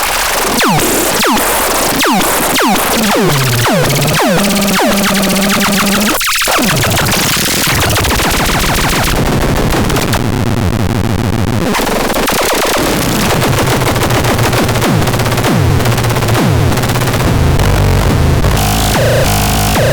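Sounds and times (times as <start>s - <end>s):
harsh stuttering electronic noise: 0.0s - 19.9s
steady electronic tone: 0.6s - 6.2s
falling electronic pitch sweeps: 2.0s - 6.2s.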